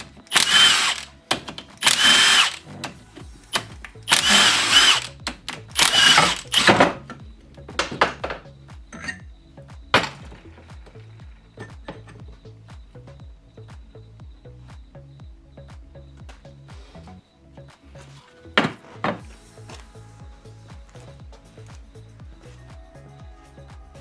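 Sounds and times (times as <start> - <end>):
power drill whining: 0.0 - 7.2.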